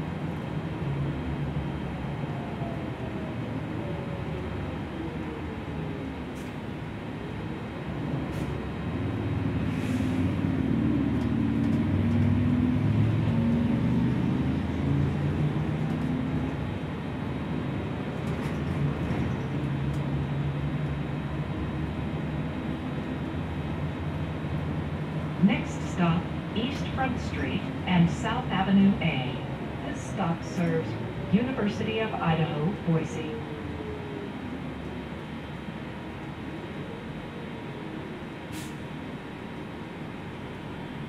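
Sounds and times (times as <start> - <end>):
bus engine running: 0.0 - 41.0
road noise: 0.0 - 41.0.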